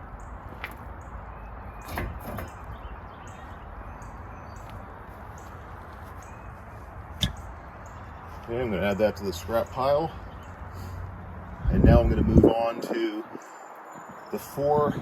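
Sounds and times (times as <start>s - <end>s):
metal clunks: 1.8s - 2.8s, 7.2s - 7.5s.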